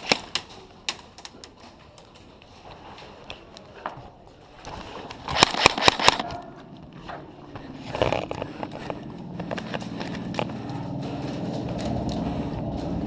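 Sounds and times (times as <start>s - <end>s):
airsoft gun shots: 5.3s - 6.4s.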